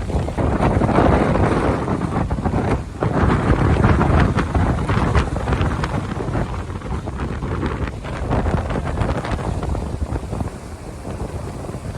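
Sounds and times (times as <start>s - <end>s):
strong wind buffeting microphone: 0.0s - 11.9s.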